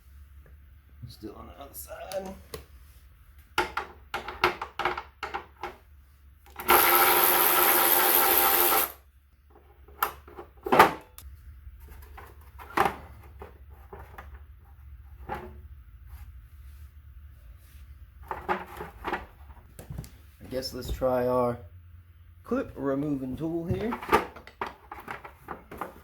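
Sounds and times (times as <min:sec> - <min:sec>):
power tool motor running: 0:06.6 - 0:09.0.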